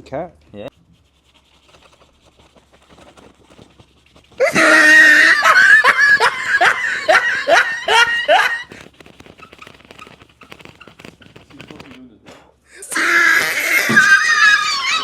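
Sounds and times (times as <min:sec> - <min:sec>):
loud laughter: 0:04.4 - 0:08.8, 0:12.8 - 0:15.0.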